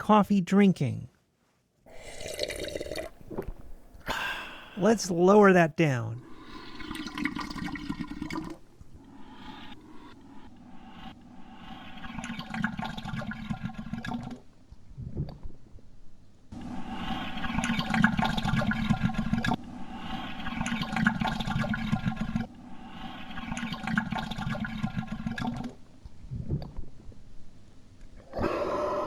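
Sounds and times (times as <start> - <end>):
pitched-down coffee slurping: 1.9 - 4.1, 6.2 - 15.7, 16.6 - 27.2.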